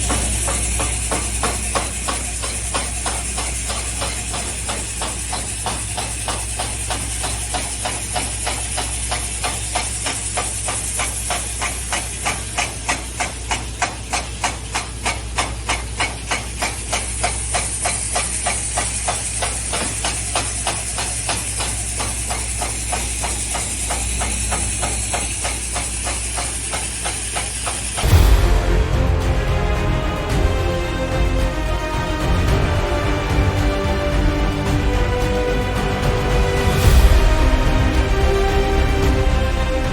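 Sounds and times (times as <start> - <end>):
engine hum: 0.0 - 7.8, 22.8 - 39.9
hiss: 0.0 - 39.9.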